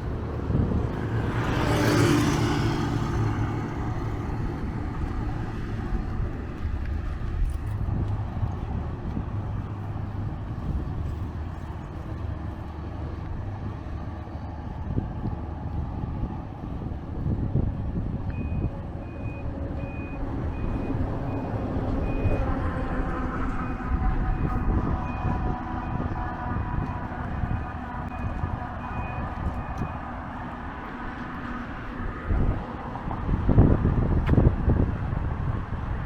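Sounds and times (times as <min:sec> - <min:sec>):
street traffic rumbling: 0:00.0 - 0:36.0
vehicle motor hum: 0:00.0 - 0:36.0
reversing alarm beeping: 0:18.4 - 0:22.5, 0:23.6 - 0:26.2, 0:26.9 - 0:30.1.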